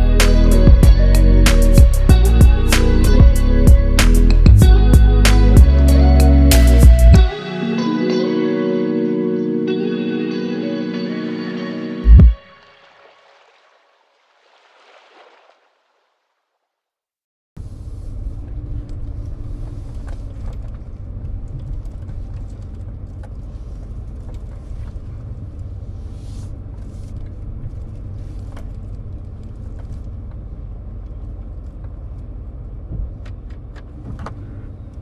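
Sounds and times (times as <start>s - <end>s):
car road and engine rumble: 17.6s - 35.0s.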